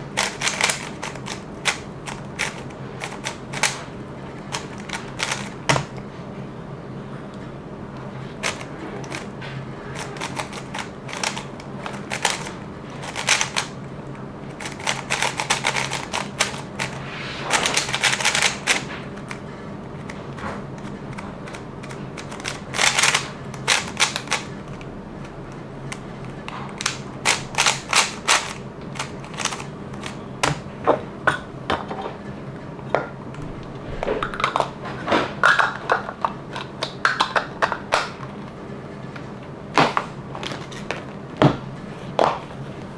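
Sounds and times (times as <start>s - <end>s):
steady low hum: 0.0s - 42.9s
plastic puzzle cube clicking: 0.2s - 3.8s, 4.4s - 5.9s, 8.4s - 9.3s, 9.9s - 13.8s, 14.6s - 19.4s, 20.8s - 24.9s, 25.9s - 30.6s.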